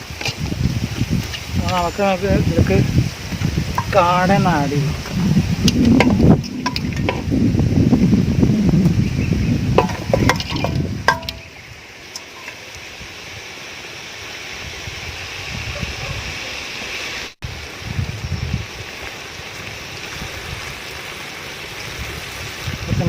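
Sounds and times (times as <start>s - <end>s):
food sizzling in a pan: 0.0s - 23.0s
food clattering into a pan: 5.7s - 7.3s, 9.8s - 11.5s, 12.2s - 12.6s
metal spoon clinking on pan: 9.8s - 11.5s, 12.2s - 12.6s.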